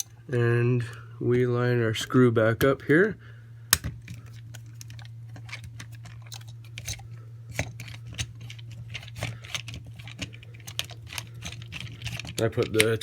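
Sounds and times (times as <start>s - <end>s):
screwdriver clicks and scrapes: 4.1s - 13.0s.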